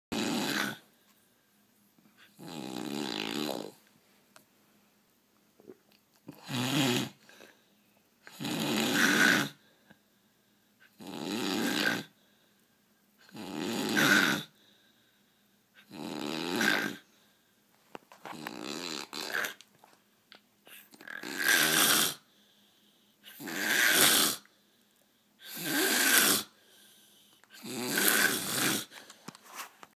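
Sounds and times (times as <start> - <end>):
person snoring: 0.1 - 0.9, 2.2 - 3.8, 6.3 - 7.6, 8.2 - 9.6, 10.9 - 12.2, 13.3 - 14.6, 15.8 - 17.1, 18.3 - 19.6, 20.7 - 22.3, 23.3 - 24.5, 25.4 - 26.6, 27.5 - 29.0
quiet breaths: 7.2 - 8.3, 9.5 - 11.0, 12.0 - 13.3, 14.4 - 15.9, 17.0 - 18.1, 22.2 - 23.5, 24.4 - 27.6, 28.4 - 29.8.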